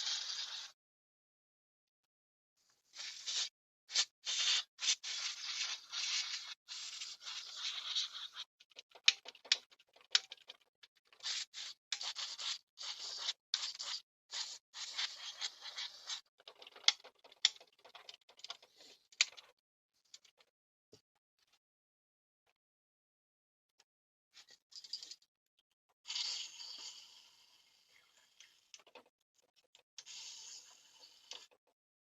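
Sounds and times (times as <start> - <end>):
scratchy scrubbing by hand: 2.9 - 8.5.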